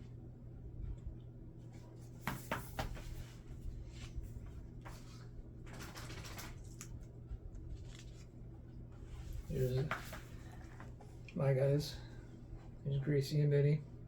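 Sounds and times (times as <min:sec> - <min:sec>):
steady low hum: 0:00.0 - 0:14.0
light knocks on book: 0:02.2 - 0:03.0
book pages rustling: 0:04.8 - 0:08.4, 0:09.0 - 0:11.2.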